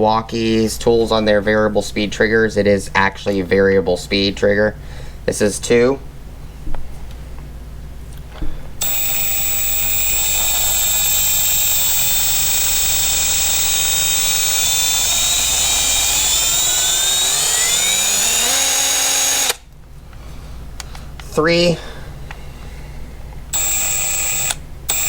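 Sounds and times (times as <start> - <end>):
impact wrench motor whine: 8.8 - 19.6, 23.6 - 25.0.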